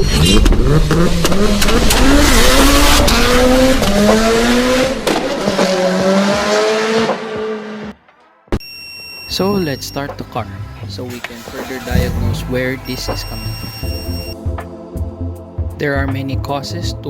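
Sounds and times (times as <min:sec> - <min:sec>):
car engine accelerating hard: 0:00.0 - 0:07.9, 0:10.0 - 0:14.4.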